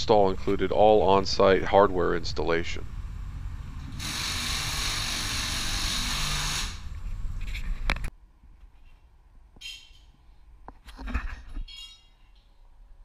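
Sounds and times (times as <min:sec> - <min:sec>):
power drill running: 0:03.9 - 0:06.9.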